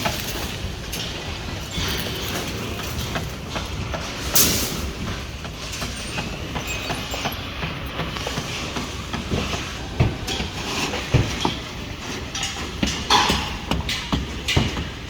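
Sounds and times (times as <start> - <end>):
metallic clinks of steel rebar: 0.0 - 8.1.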